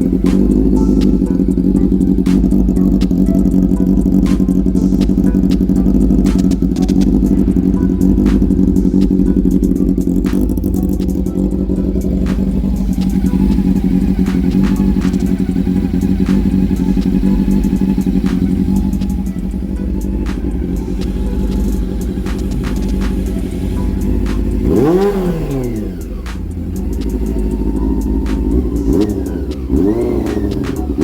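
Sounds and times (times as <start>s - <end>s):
motorcycle engine idling: 0.0s - 31.0s
sharp ticks: 0.0s - 31.0s.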